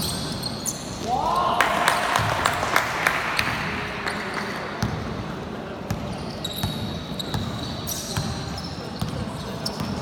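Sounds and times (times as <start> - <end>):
crowd and court noise: 0.0 - 10.0
basketball bouncing on court: 4.8 - 10.0.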